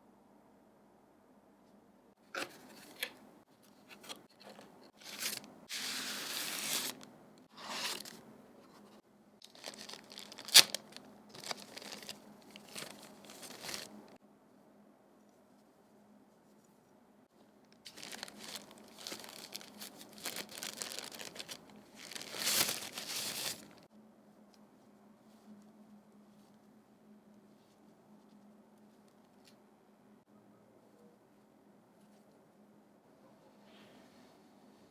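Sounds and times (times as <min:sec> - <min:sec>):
packaging crinkling and tearing: 0:05.0 - 0:07.1, 0:09.4 - 0:14.2, 0:17.8 - 0:23.8.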